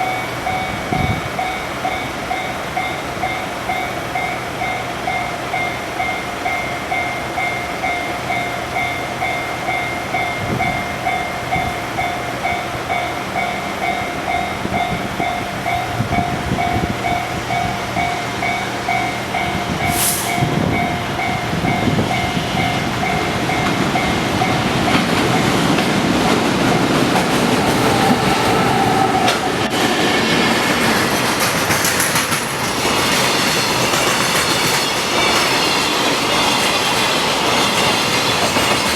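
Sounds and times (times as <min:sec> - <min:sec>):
level crossing alarm bell ringing: 0:00.0 - 0:25.7
train wheels clattering over rail joints: 0:29.2 - 0:38.9.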